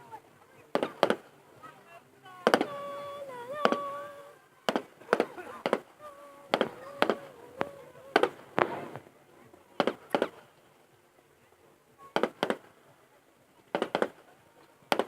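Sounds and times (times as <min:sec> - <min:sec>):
fireworks crackle: 0:00.0 - 0:10.8, 0:12.0 - 0:12.8, 0:13.7 - 0:15.0
fireworks bangs: 0:00.7 - 0:01.7, 0:02.3 - 0:09.1, 0:09.8 - 0:10.5, 0:12.1 - 0:12.7, 0:13.7 - 0:14.3.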